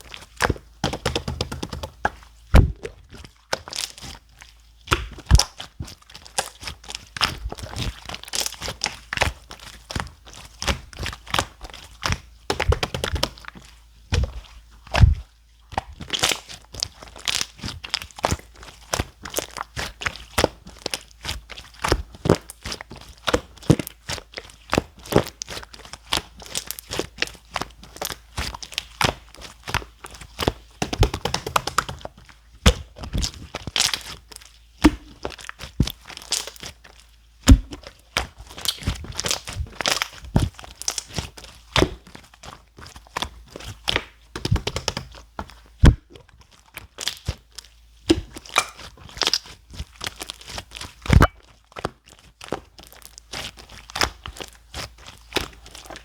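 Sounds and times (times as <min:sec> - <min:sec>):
slime squished by hand: 0:00.0 - 0:56.0.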